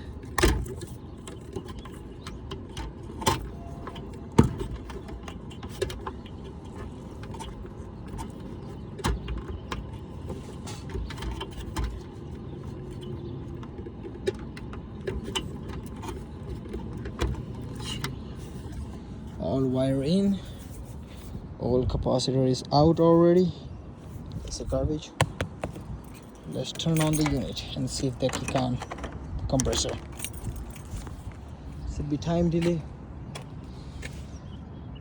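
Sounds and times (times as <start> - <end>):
tool clicks and knocks: 25.2 - 25.8.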